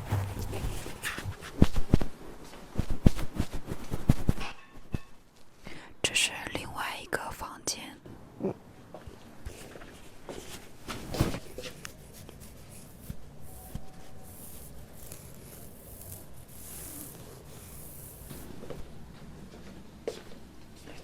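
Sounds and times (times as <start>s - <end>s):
hands rubbing and scratching objects: 0.0s - 2.1s, 2.7s - 4.5s, 9.5s - 18.6s.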